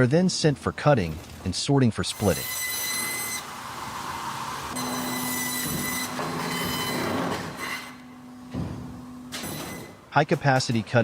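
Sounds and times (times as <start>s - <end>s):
high-pitched squeal: 4.7s - 8.0s.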